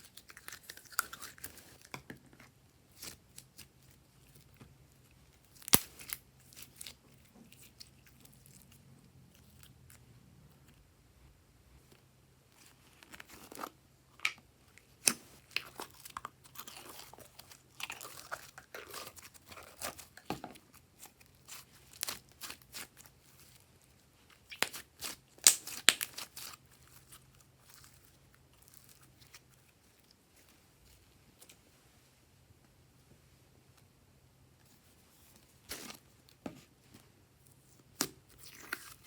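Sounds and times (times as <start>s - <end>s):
slime squished by hand: 24.3s - 29.7s.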